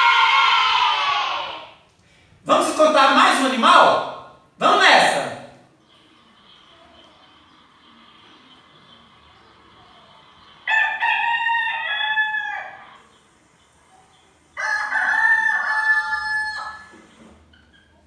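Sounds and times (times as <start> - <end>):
rooster crowing: 10.6 - 13.0, 14.5 - 17.0.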